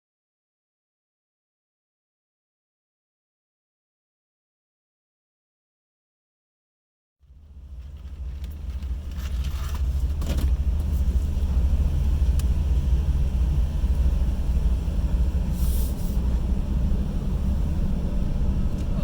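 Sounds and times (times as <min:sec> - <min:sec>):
low engine rumble: 0:07.2 - 0:19.0
brief hisses: 0:15.6 - 0:16.2.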